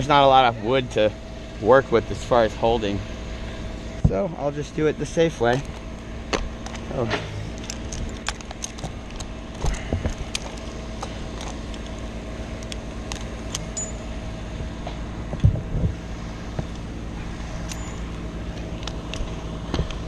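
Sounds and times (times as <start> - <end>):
engine humming: 0.0 - 20.0
metallic clinks of climbing hardware: 12.6 - 14.1, 17.6 - 18.2
low thumps: 14.5 - 16.8.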